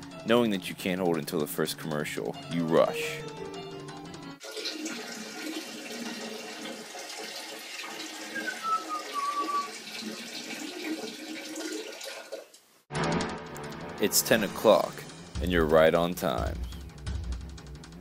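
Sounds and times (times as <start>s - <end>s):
falling whistle: 8.3s - 9.8s.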